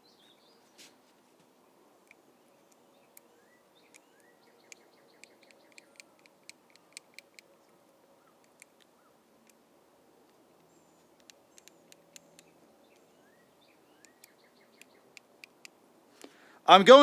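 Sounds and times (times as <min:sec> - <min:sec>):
faint bird chirps: 0:02.1 - 0:09.2, 0:10.6 - 0:15.2.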